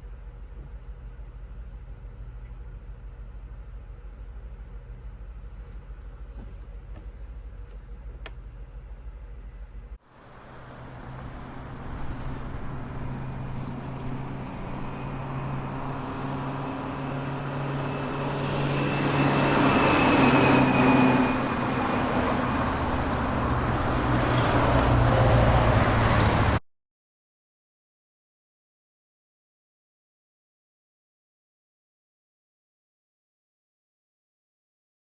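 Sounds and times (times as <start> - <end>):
vehicle road noise: 10.1 - 26.6.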